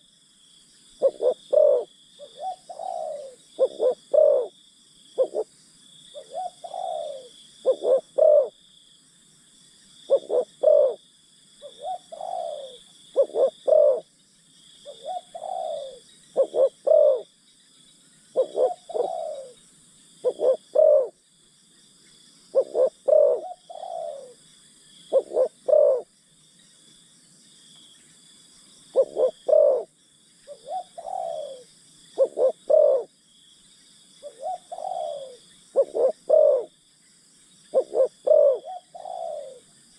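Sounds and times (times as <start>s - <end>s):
high-pitched insect buzz: 0.0s - 39.9s
dove cooing: 1.0s - 4.6s, 5.2s - 5.5s, 6.1s - 8.6s, 10.1s - 11.0s, 11.6s - 14.1s, 14.8s - 17.3s, 18.3s - 19.6s, 20.2s - 21.2s, 22.5s - 24.4s, 25.1s - 26.1s, 28.9s - 29.9s, 30.5s - 33.1s, 34.2s - 36.8s, 37.7s - 39.7s.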